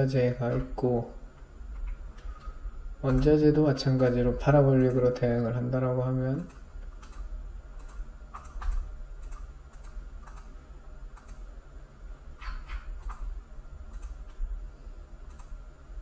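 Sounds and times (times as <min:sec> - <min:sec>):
faint low hum: 0:00.0 - 0:16.0
keyboard and mouse clicks: 0:03.1 - 0:03.4, 0:06.4 - 0:10.5, 0:11.1 - 0:11.4, 0:12.4 - 0:13.3, 0:13.9 - 0:14.4, 0:15.2 - 0:15.6.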